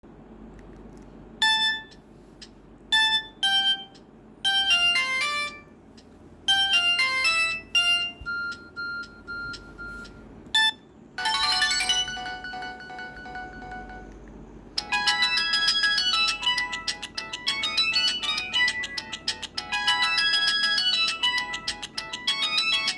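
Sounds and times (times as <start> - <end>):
electronic ringtone melody: 4.5 - 5.7, 6.5 - 10.2, 11.2 - 22.9.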